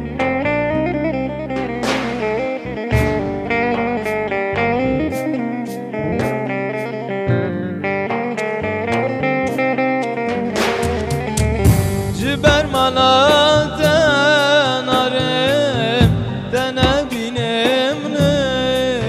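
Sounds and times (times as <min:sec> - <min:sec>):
plucked-string melody: 0:00.0 - 0:19.0
percussion beat: 0:01.6 - 0:03.4, 0:05.1 - 0:06.9, 0:10.4 - 0:19.0.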